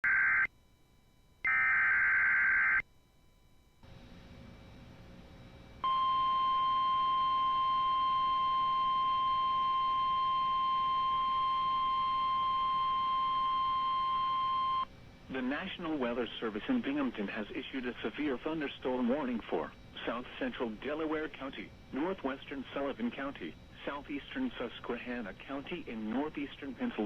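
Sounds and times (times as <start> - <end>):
steady warning alarm tone: 1.2 - 3.6, 5.8 - 14.9, 17.7 - 27.0.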